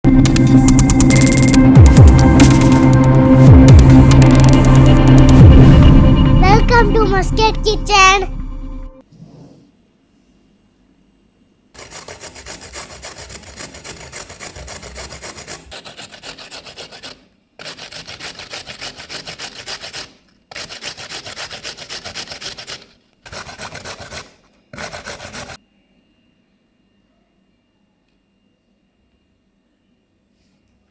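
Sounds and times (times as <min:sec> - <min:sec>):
scraping a raw carrot: 0:11.8 - 0:25.6.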